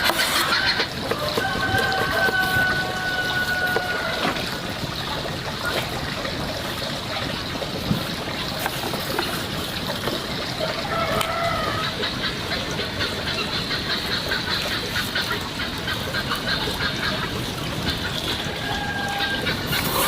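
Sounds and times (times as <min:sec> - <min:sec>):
rooster crowing: 0:01.1 - 0:04.4, 0:10.8 - 0:11.9, 0:18.6 - 0:19.5.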